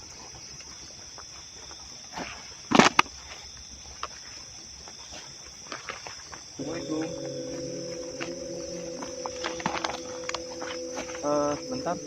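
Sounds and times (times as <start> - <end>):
crickets chirring: 6.4 - 12.0.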